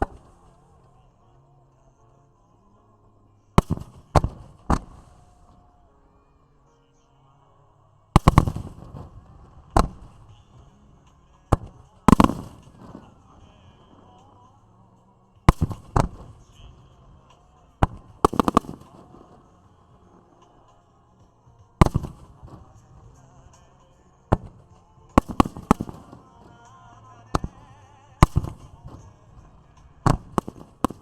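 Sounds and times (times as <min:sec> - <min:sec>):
fireworks bursting with echo: 0:00.0 - 0:00.6, 0:03.6 - 0:05.7, 0:08.2 - 0:14.2, 0:15.5 - 0:20.7, 0:21.6 - 0:23.7, 0:24.3 - 0:31.0.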